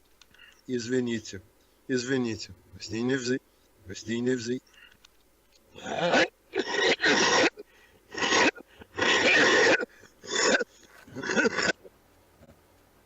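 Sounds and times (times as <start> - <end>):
man coughing harshly: 5.8 - 11.8.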